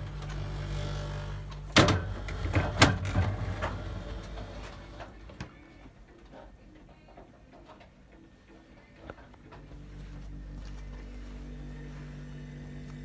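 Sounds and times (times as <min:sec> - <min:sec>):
refrigerator compressor humming: 0:00.0 - 0:05.4, 0:09.4 - 0:13.0.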